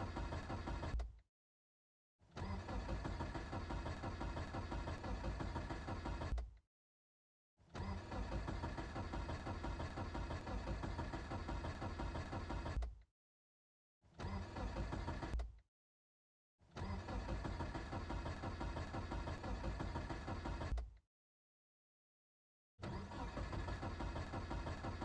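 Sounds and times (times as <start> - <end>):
car engine cranking: 0.0 - 1.1, 2.3 - 6.5, 7.8 - 13.0, 14.2 - 15.5, 16.7 - 20.9, 22.8 - 25.0.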